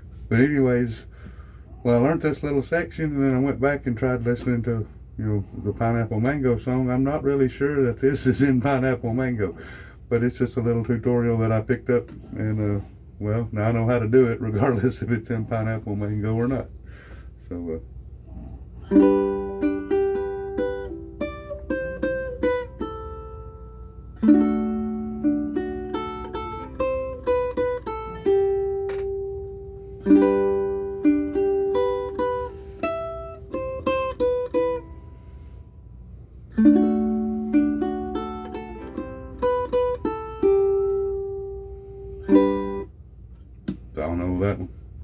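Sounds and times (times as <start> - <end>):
ukulele fingerpicked melody: 18.9 - 35.4, 36.5 - 42.9.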